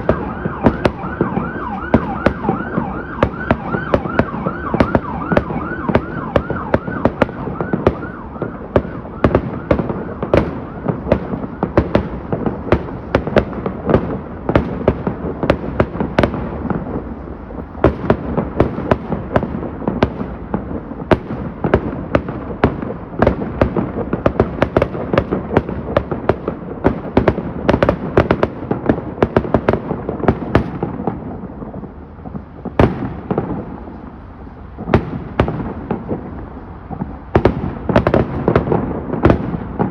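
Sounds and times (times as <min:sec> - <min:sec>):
siren yelping: 0:00.0 - 0:11.7
fireworks bangs and crackles: 0:00.0 - 0:39.9.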